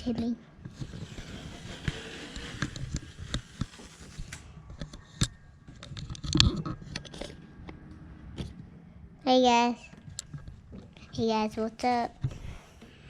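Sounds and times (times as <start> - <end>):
scuff pad rubbing metal: 0.7 - 4.2.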